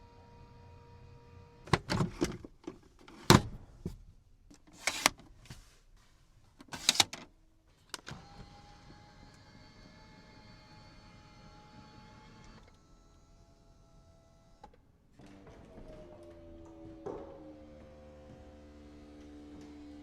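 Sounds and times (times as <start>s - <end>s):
motor hum: 15.2s - 20.0s.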